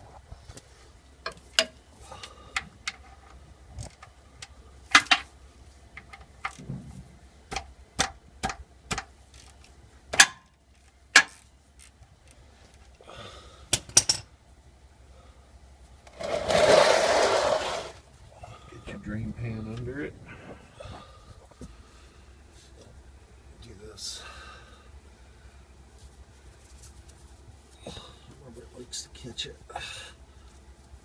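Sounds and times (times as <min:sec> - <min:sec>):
rushing scraping noise: 0:16.1 - 0:18.0.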